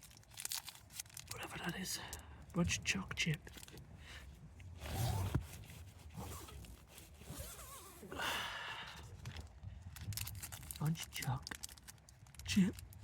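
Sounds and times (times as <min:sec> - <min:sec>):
wrapper rustling: 0:00.0 - 0:01.5, 0:09.2 - 0:13.0.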